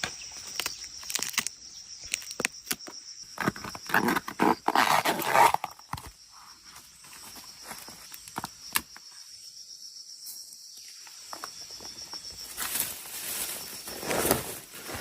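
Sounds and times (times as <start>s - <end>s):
insects chirping: 0.0s - 15.0s
rustling: 12.5s - 15.0s.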